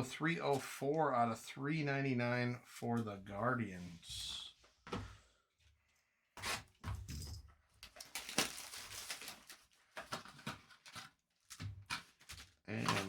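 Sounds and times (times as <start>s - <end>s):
cardboard rustling and scraping: 6.4s - 7.1s, 7.9s - 13.0s.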